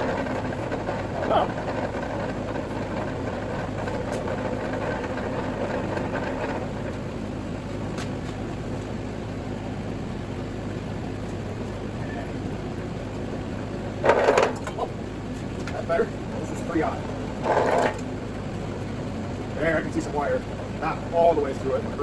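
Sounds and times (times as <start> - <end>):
grinding through geared blades: 0.0 - 7.4, 15.7 - 22.0
machine motor humming: 0.0 - 22.0.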